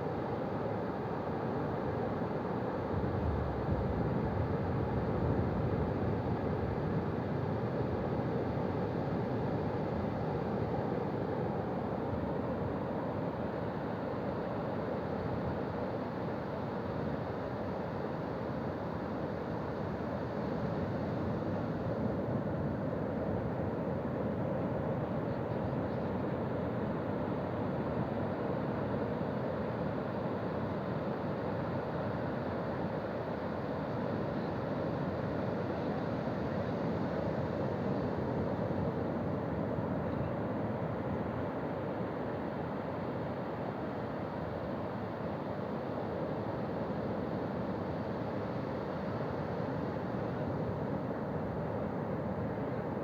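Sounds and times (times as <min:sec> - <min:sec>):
ocean waves on a beach: 0:00.0 - 0:53.0.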